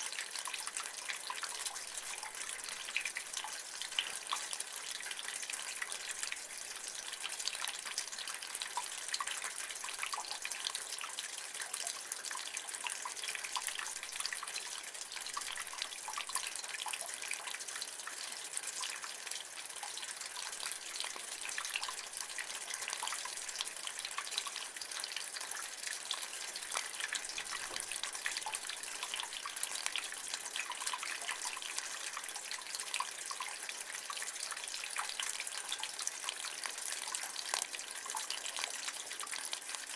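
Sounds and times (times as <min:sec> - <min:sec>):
rainwater splashing from gutter: 0:00.0 - 0:39.9.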